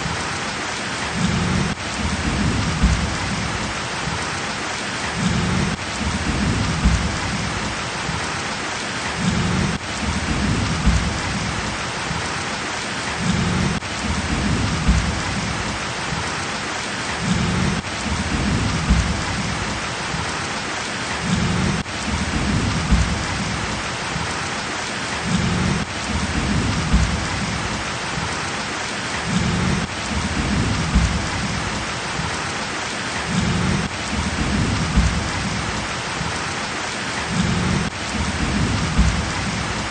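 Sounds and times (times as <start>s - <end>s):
heavy rain: 0.0s - 39.9s.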